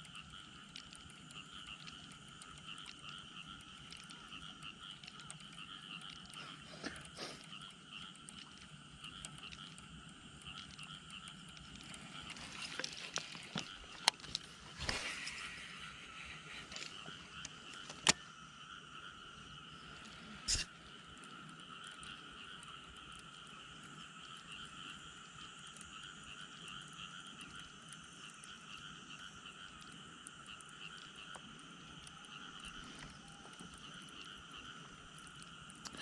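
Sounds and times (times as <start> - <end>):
frogs calling in chorus: 0.0 - 36.0
sharp click: 17.4 - 18.3, 20.5 - 20.7.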